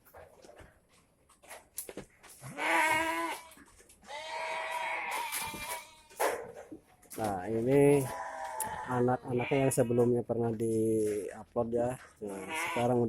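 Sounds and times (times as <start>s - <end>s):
goats bleating: 2.4s - 6.2s, 7.9s - 10.1s, 12.2s - 13.0s.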